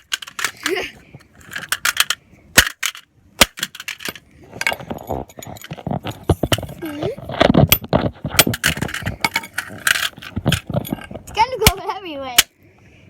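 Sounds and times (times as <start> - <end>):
plastic pieces clattering: 0.0 - 6.9
pickaxe striking plastic toy: 1.6 - 4.2.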